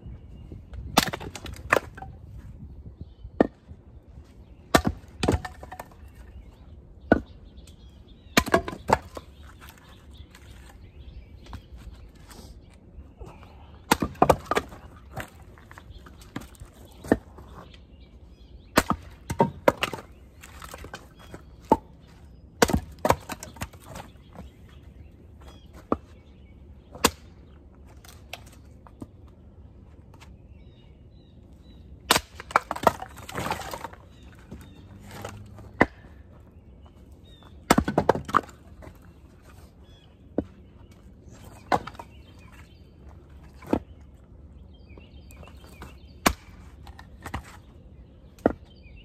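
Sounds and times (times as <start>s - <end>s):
blade chopping wood: 0.8s - 2.2s, 4.7s - 5.9s, 8.3s - 9.3s, 13.9s - 15.4s, 18.7s - 21.0s, 22.6s - 24.1s, 32.1s - 34.0s, 37.6s - 38.6s, 45.8s - 47.6s.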